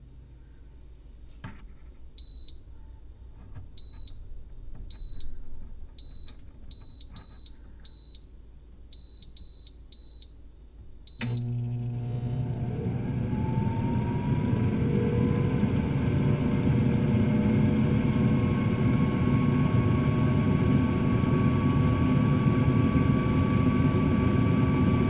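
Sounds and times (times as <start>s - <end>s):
control panel beeping: 11.1s - 12.0s
oven fan humming: 11.1s - 25.0s.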